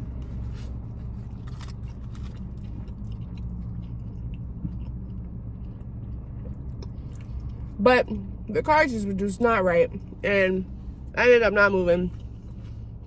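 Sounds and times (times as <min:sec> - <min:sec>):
person chewing food: 0:00.0 - 0:07.8
car cabin rumble: 0:00.0 - 0:13.0.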